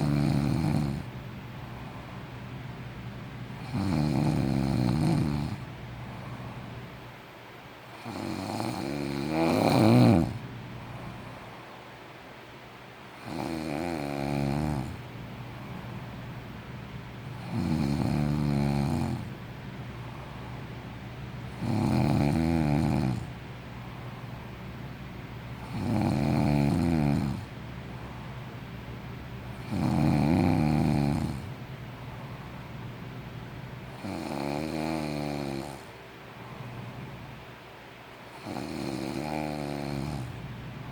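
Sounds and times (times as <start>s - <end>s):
person snoring: 0.0s - 1.1s, 3.6s - 5.7s, 8.0s - 10.4s, 13.2s - 15.0s, 17.4s - 19.3s, 21.5s - 23.3s, 25.6s - 27.5s, 29.6s - 31.5s, 34.0s - 35.9s, 38.3s - 40.4s.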